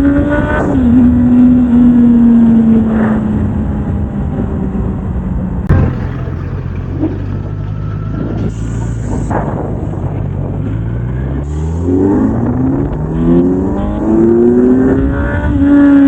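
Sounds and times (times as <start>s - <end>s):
motorcycle engine revs falling: 5.7s - 16.0s.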